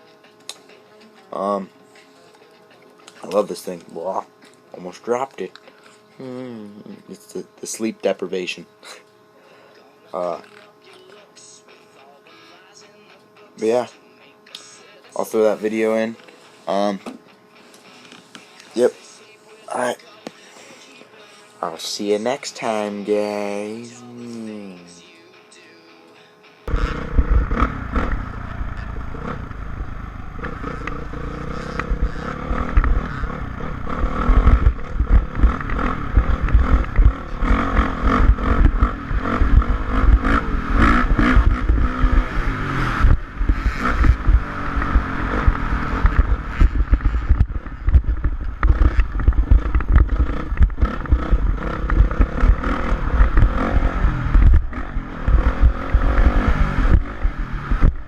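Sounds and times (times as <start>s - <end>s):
motorbike engine revving: 26.6s - 58.0s.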